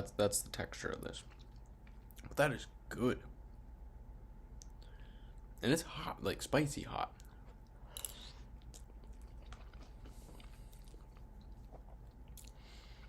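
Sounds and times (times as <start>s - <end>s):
quiet chewing: 1.2s - 2.4s, 7.2s - 13.0s.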